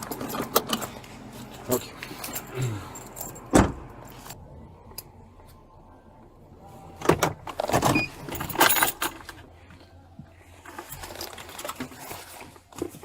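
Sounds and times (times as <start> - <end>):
metal jangling and clattering: 0.0 - 4.4, 8.0 - 9.4.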